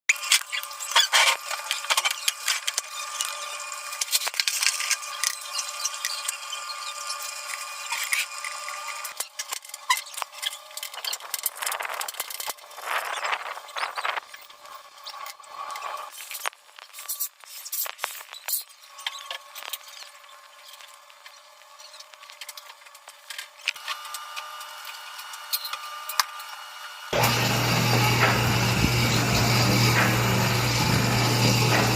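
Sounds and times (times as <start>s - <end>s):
tool scraping on metal: 27.1s - 31.9s.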